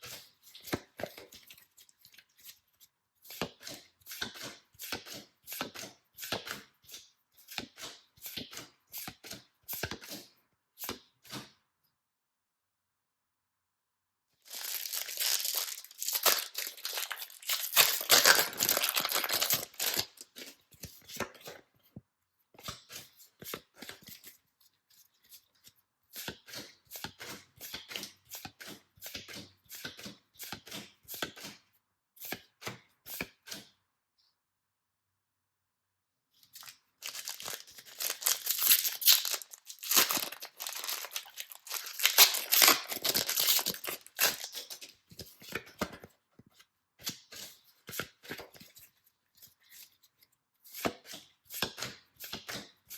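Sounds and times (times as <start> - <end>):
wrapper torn open and crinkled: 14.4 - 20.2, 36.6 - 44.8.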